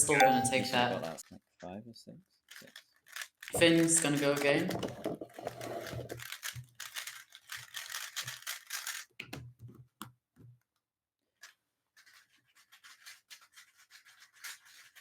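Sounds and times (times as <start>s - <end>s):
puzzle cube plastic clicking: 2.6s - 9.2s.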